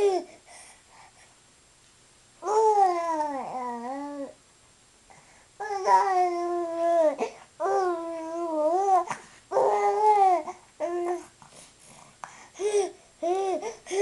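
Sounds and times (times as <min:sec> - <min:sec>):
baby cooing: 0:02.4 - 0:04.4, 0:05.6 - 0:11.3.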